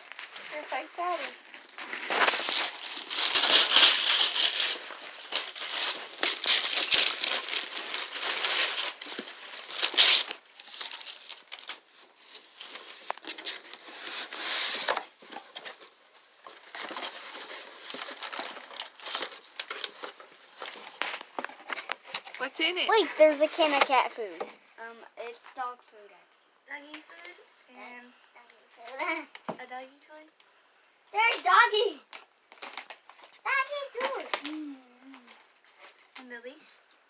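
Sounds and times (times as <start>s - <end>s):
wrapping paper crumpling and tearing: 0.0s - 24.2s, 32.1s - 36.7s.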